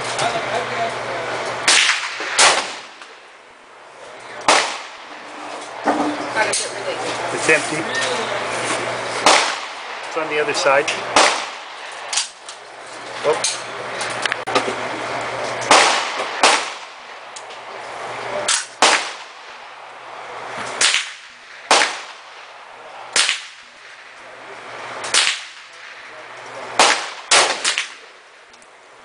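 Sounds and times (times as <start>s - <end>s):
rifle shots with echo: 1.6s - 3.3s, 4.4s - 5.8s, 9.2s - 12.4s, 15.6s - 17.7s, 18.5s - 24.1s, 24.7s - 28.4s.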